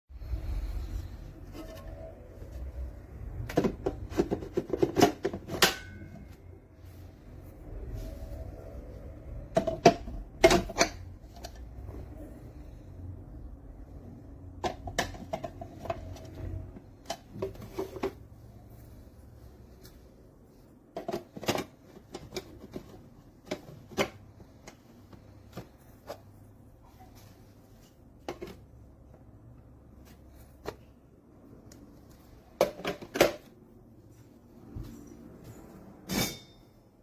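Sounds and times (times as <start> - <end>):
plastic parts clicking and knocking: 3.3 - 6.3, 9.5 - 11.8, 14.4 - 18.3, 20.9 - 26.2, 32.5 - 33.5.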